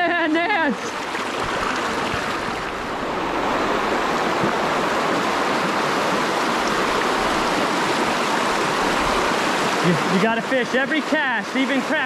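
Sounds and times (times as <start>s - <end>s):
creek water rushing: 0.0s - 12.0s.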